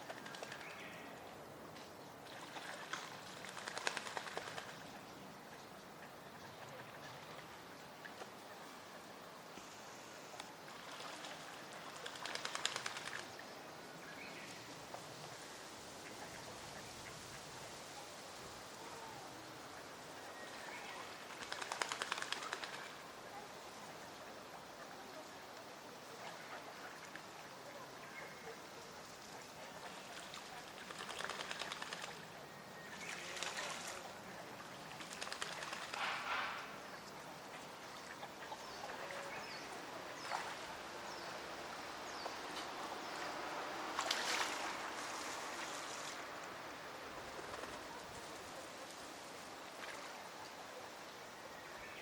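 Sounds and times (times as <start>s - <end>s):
bird wings flapping: 0.0s - 0.8s, 2.3s - 4.8s, 10.7s - 13.3s, 21.2s - 23.0s, 30.1s - 32.3s, 34.9s - 36.8s, 47.2s - 48.2s
faint outdoor hiss: 0.0s - 52.0s
ducks dabbling splashy pattering: 2.2s - 4.8s, 10.7s - 13.3s, 21.2s - 23.0s, 29.8s - 32.2s, 34.8s - 36.8s, 43.8s - 46.2s.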